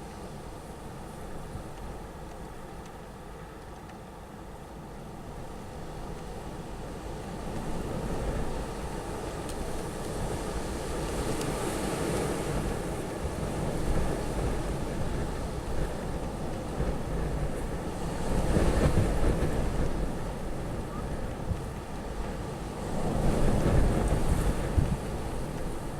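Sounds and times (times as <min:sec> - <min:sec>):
wind rumble on microphone: 0:05.8 - 0:25.9
storm wind gusting: 0:07.5 - 0:25.9.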